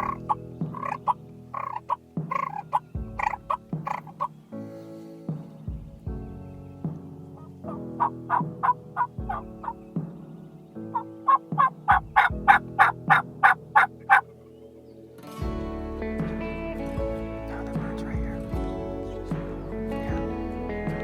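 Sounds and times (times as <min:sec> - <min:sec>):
wild turkey yelping: 0:00.0 - 0:04.4, 0:07.4 - 0:09.8, 0:11.0 - 0:14.3.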